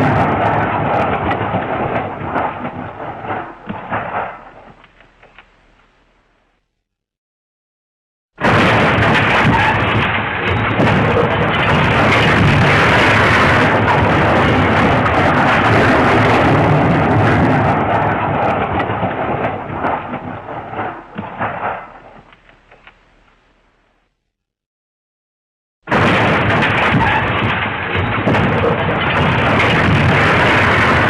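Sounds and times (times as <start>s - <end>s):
loud rumbling crash: 0.0s - 5.3s, 8.4s - 22.3s, 25.9s - 31.0s
scattered crackles: 0.0s - 6.8s, 8.4s - 24.2s, 25.9s - 31.0s.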